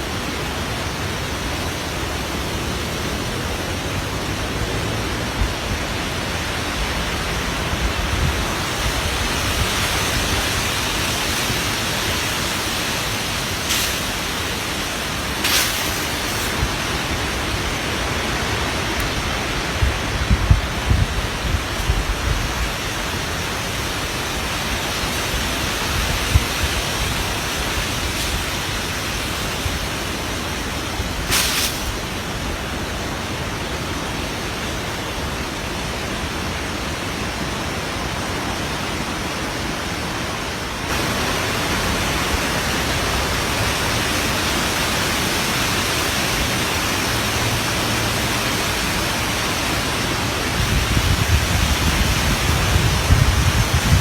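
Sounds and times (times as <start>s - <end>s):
heavy rain and wind: 0.0s - 54.0s
short sharp hiss: 13.4s - 16.8s, 31.2s - 32.2s.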